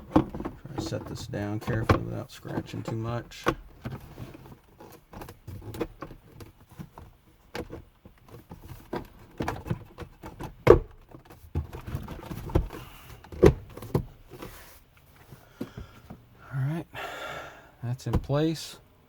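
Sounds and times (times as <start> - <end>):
trim panel clicks and knocks: 7.5 - 14.1.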